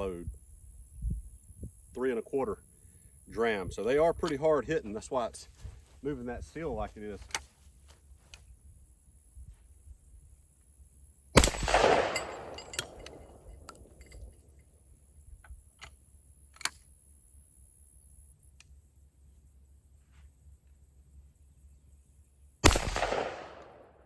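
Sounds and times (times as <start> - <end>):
shotgun blast echoing: 11.4 - 14.3, 22.6 - 24.0.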